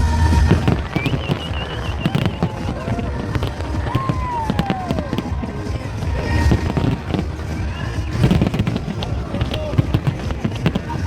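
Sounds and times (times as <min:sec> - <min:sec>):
deep fireworks booms: 0:00.0 - 0:11.0
fireworks bangs and crackles: 0:00.0 - 0:11.0.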